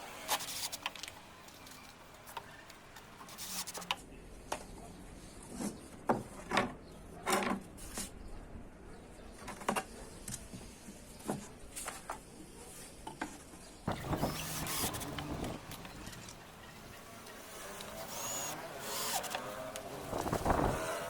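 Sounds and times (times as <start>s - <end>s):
wood rubbing or scraping: 13.9s - 21.0s.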